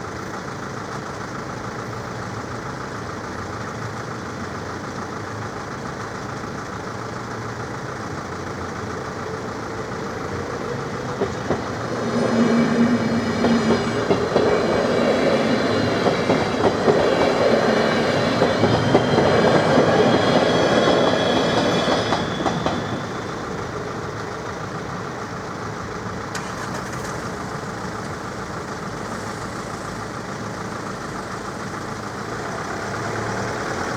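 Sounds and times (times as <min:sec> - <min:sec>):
train rumble: 0:00.0 - 0:33.9
train wheels clacking over rails: 0:08.5 - 0:33.9.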